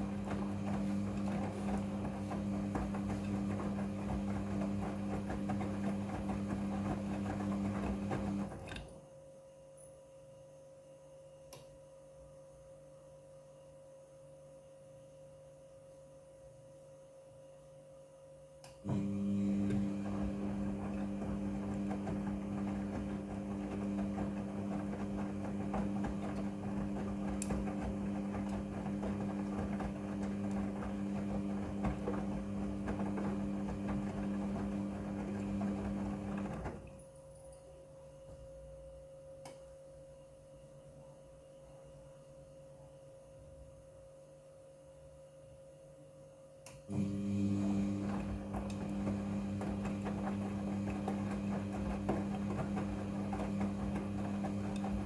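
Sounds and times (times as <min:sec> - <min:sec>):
washing machine drum turning: 0:00.0 - 0:08.9, 0:18.9 - 0:36.9, 0:46.9 - 0:55.0
load churning in drum: 0:18.9 - 0:36.9.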